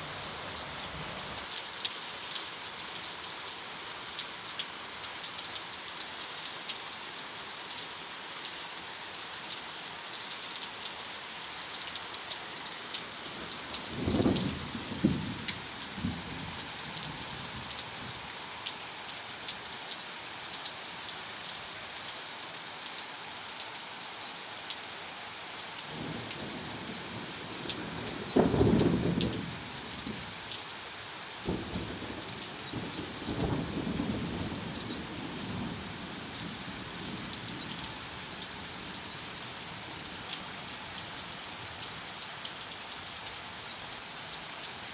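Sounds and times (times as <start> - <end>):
heavy rain: 0.0 - 44.9
thunder rumbling: 13.9 - 16.6.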